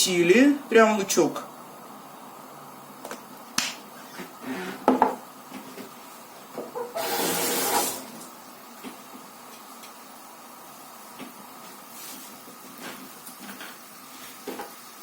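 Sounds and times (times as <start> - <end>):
hiss: 7.0 - 8.1.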